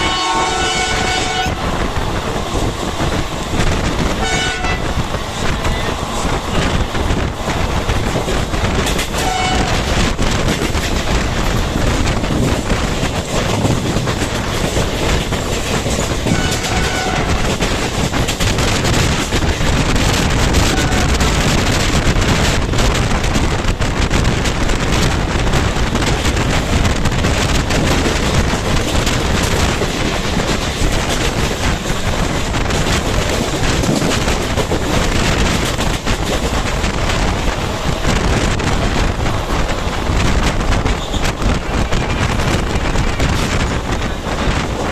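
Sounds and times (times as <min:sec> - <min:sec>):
track clickety-clack: 0:00.0 - 0:44.9
train wheels on rails: 0:00.0 - 0:44.9.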